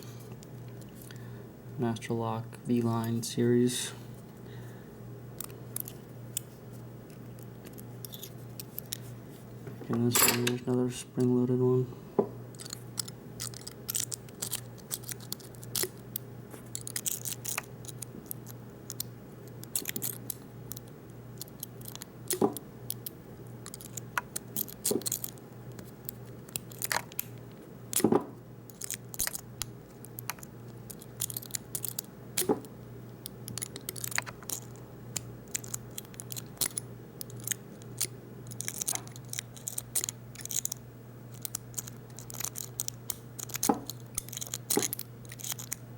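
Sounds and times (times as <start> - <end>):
low steady hum: 0.0 - 45.9
lock pick metallic clicks and scrapes: 7.1 - 9.0, 12.5 - 16.0, 16.6 - 20.8, 21.4 - 25.4, 30.0 - 32.5, 33.5 - 45.8.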